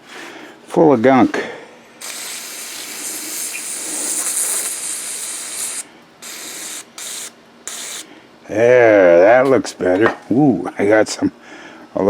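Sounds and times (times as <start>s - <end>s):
aerosol spray can hissing: 2.0s - 8.1s.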